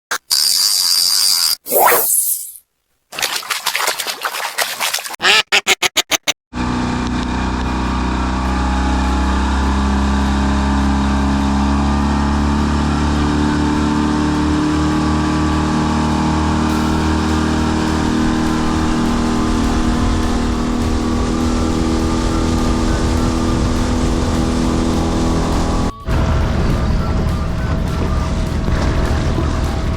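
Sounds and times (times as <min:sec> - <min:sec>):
boat engine humming: 0:06.6 - 0:29.9.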